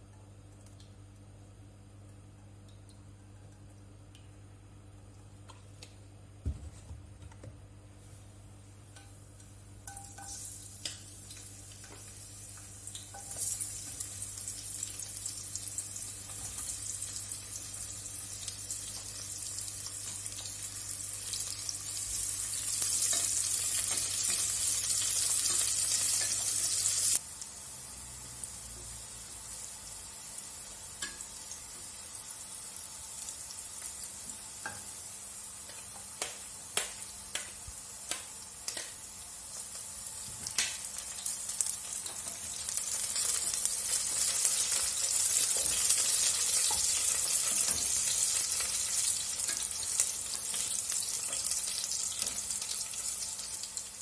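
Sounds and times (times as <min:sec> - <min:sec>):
food sizzling in hot oil: 0:09.9 - 0:54.0.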